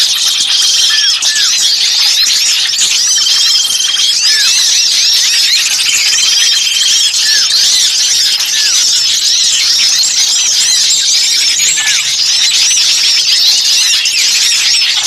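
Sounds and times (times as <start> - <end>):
bird trill: 0.0 - 15.0
songbirds chirping: 0.0 - 15.0.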